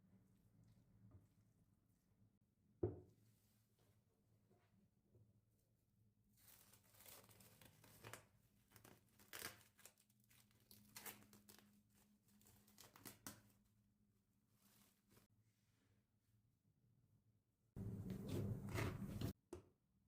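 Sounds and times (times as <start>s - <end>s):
wrapping material crinkling and tearing: 6.4s - 13.6s.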